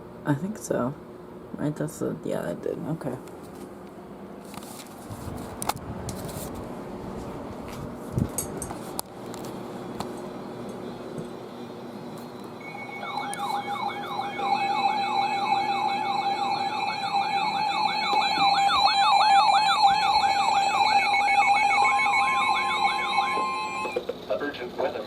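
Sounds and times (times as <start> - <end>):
steady tone: 12.6 - 24.0
warbling siren alarm: 12.6 - 24.0.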